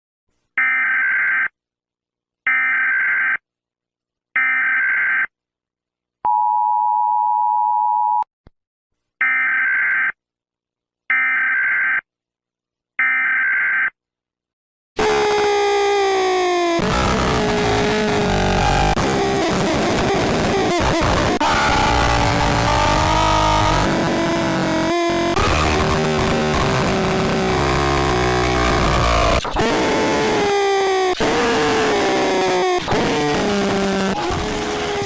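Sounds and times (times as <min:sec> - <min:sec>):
harsh falling-pitch sound: 0:15.0 - 0:35.0.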